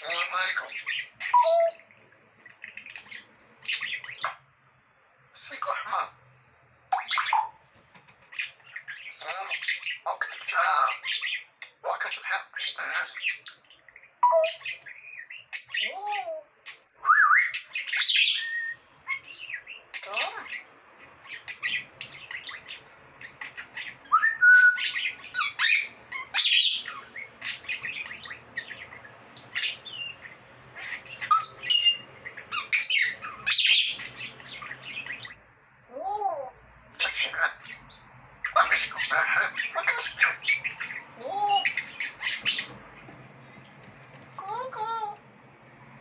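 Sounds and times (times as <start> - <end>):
parrot whistling: 0.0 - 1.8, 16.9 - 20.5, 21.4 - 35.4
parrot squawking and chirping: 0.0 - 4.6, 5.3 - 45.2.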